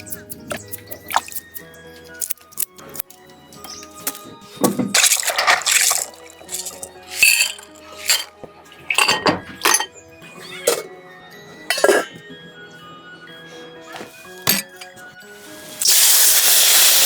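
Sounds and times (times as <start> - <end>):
background music: 0.0 - 17.0
water splashing and dribbling: 1.0 - 1.4, 4.9 - 9.2.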